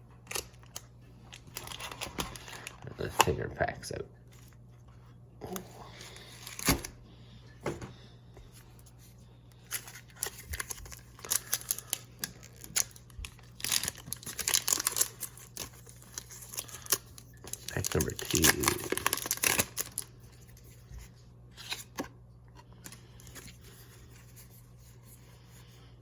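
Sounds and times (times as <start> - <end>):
foil wrappers crinkling and tearing: 0.2 - 3.5, 5.9 - 7.0, 9.5 - 20.8, 22.6 - 24.5.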